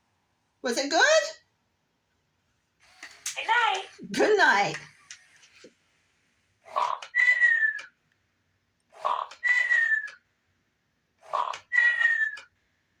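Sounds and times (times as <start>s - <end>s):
toy parrot snoring and whistling: 6.7s - 8.0s, 9.0s - 10.3s, 11.2s - 12.6s.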